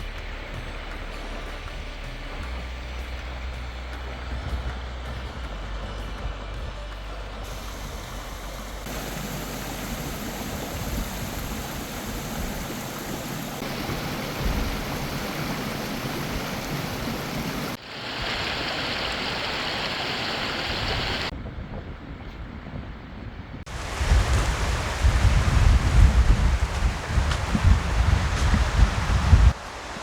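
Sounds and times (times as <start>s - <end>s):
river water rushing: 7.4s - 21.3s, 23.7s - 30.0s
wind rumbling on microphone: 7.4s - 30.0s.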